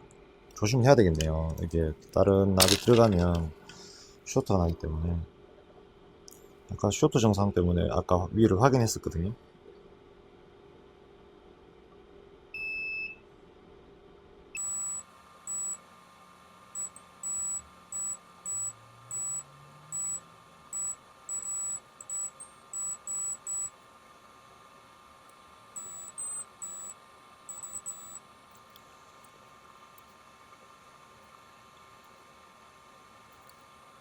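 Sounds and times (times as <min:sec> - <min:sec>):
multimeter beeping: 0:14.6 - 0:15.8, 0:16.7 - 0:23.8, 0:25.7 - 0:29.4.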